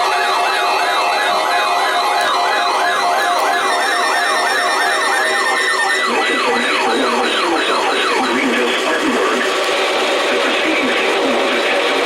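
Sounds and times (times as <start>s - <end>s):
lower siren: 0.0s - 8.3s
electronic siren wailing: 0.0s - 12.0s.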